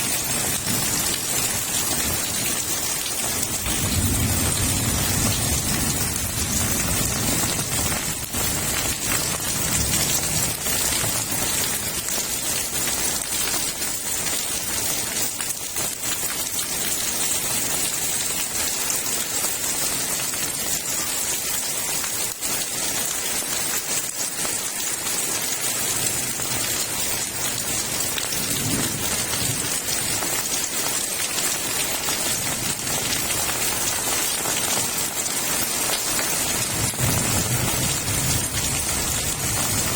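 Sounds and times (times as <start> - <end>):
heavy rain pouring: 0.0 - 39.9
thunder rumbling: 3.5 - 10.6, 28.4 - 29.8, 36.6 - 39.9.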